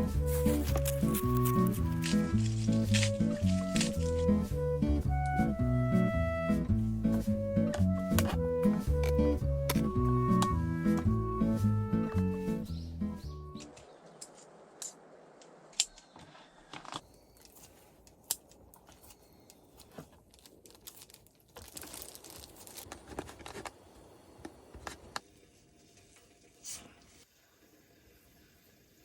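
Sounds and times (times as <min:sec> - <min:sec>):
soft rustling and crinkling: 0:00.2 - 0:04.3, 0:16.1 - 0:25.2.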